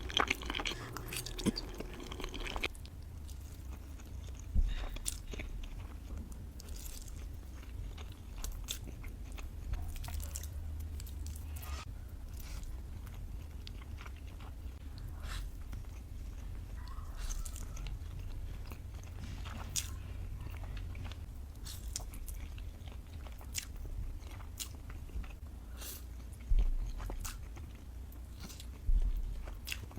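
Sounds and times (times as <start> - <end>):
person chewing wet mouth noises: 0.0 - 6.0
steady low hum: 0.0 - 29.9.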